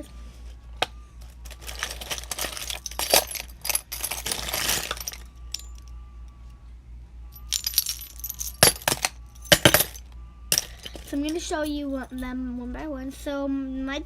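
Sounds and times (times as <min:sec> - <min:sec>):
small hard objects clinking in a box: 0:01.4 - 0:05.8, 0:07.4 - 0:11.2.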